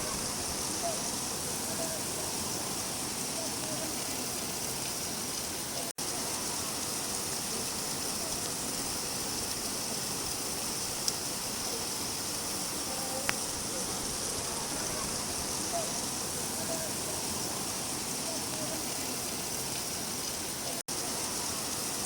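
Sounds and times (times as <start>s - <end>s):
steady rainfall: 0.0s - 22.0s
drip ticks: 7.8s - 11.4s.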